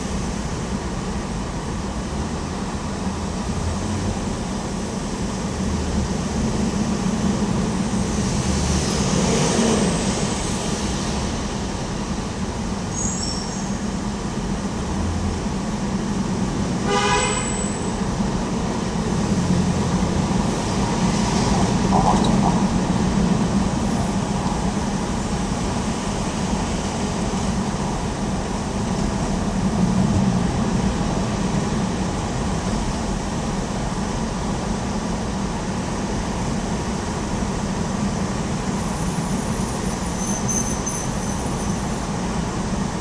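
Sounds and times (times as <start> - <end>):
road traffic rumble: 0.0 - 43.0
vehicle horn toot: 16.8 - 17.9.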